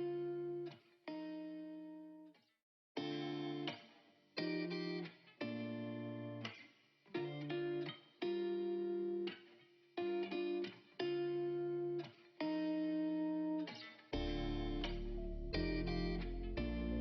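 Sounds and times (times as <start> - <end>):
ringing guitar chords: 0.0 - 2.2, 3.0 - 6.6, 7.2 - 9.4, 10.0 - 17.0
deep bass: 14.2 - 17.0.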